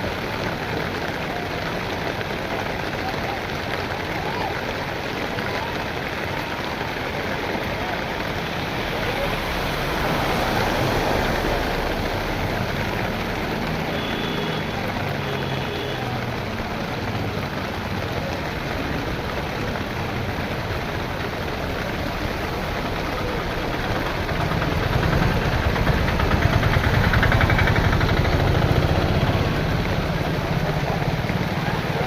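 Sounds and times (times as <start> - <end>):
heavy rain pouring: 0.0 - 32.0
engine running: 19.8 - 32.0.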